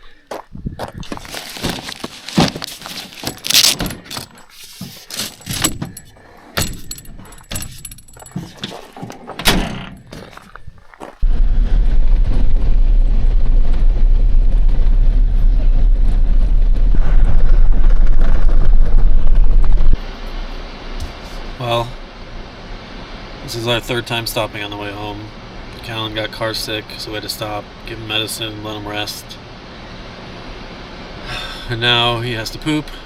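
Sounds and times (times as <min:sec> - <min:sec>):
camping gear clicking and rattling: 0:00.0 - 0:11.2
vehicle road noise rumble: 0:00.0 - 0:33.0.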